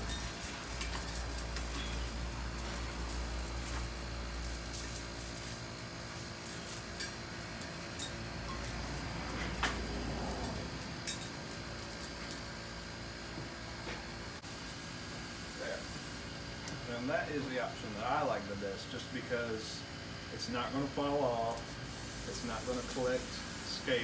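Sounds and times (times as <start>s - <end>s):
steel chain clinking and rattling: 0.0s - 15.3s, 21.2s - 24.0s.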